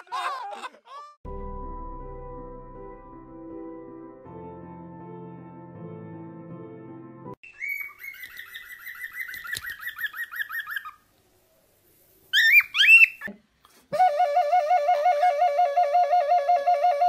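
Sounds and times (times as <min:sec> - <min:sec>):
rising whistled bird calls: 0:07.4 - 0:11.0, 0:12.3 - 0:13.3
warbling bird whistle: 0:07.4 - 0:11.0, 0:12.3 - 0:13.3
bird chirping: 0:07.4 - 0:11.1, 0:12.3 - 0:13.3.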